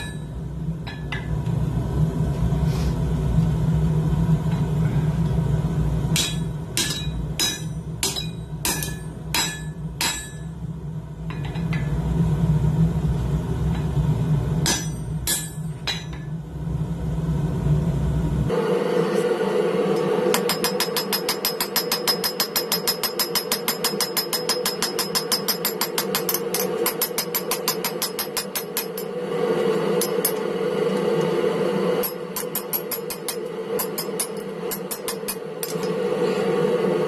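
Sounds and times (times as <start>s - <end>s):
hammer ringing on anvil: 0.0s - 1.3s, 6.2s - 10.6s, 14.6s - 16.3s, 20.3s - 29.2s, 32.0s - 35.9s
low rumble: 0.0s - 18.6s.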